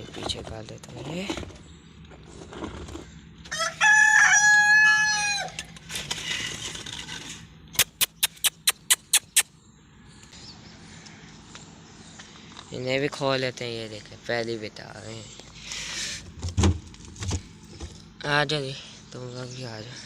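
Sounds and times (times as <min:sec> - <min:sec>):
rooster crowing: 0:03.5 - 0:05.7
sharp clicks: 0:07.8 - 0:09.5.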